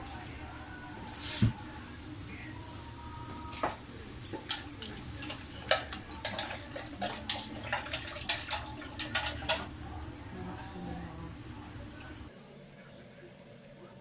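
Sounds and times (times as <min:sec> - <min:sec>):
liquid sloshing: 0:03.6 - 0:12.3.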